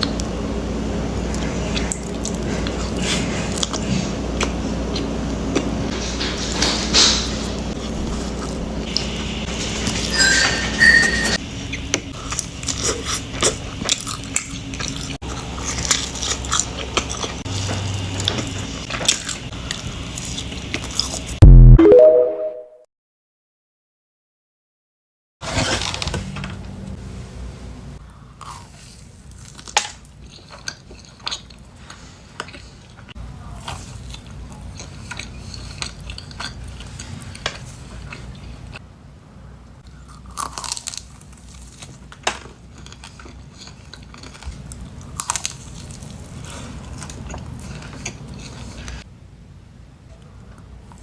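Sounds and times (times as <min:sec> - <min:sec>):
crisp crunches of biting: 0:40.1 - 0:48.6.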